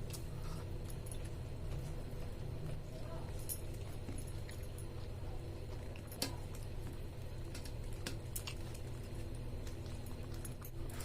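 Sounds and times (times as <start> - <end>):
steady low hum: 0.0 - 11.0
eating clicks and ticks: 3.5 - 11.0.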